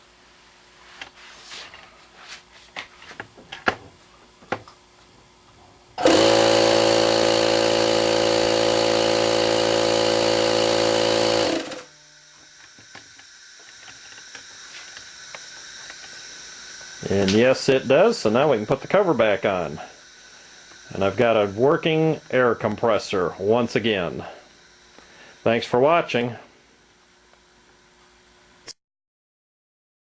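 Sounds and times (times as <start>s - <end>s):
air compressor humming: 4.0s - 27.6s
faint hiss: 12.3s - 26.8s.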